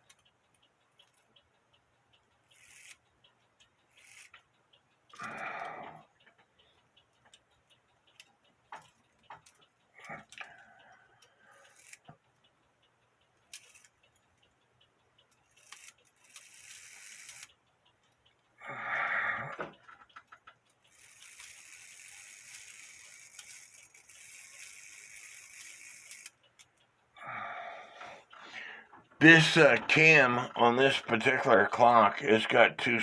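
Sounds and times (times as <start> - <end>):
small clicks and rattling: 0.0 - 18.5, 19.5 - 27.0.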